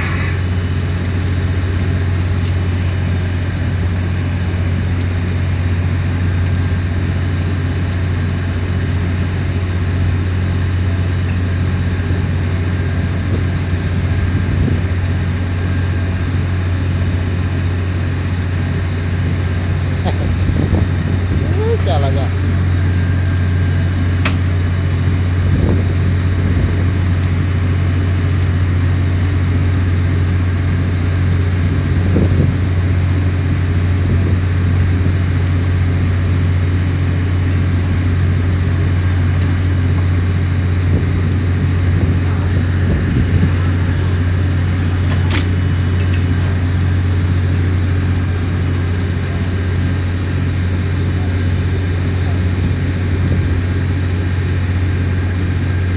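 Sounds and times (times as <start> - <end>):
engine droning steadily: 0.0 - 55.9.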